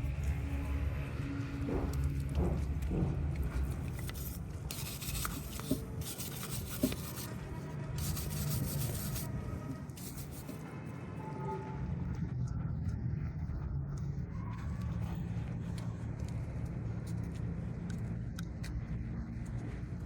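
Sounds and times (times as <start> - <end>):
abrasive rubbing on metal part: 8.0 - 9.3.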